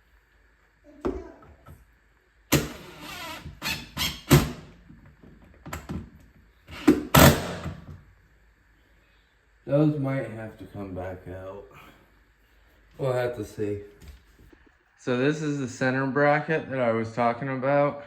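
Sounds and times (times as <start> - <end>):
screws squeaking and scraping: 2.8 - 4.3.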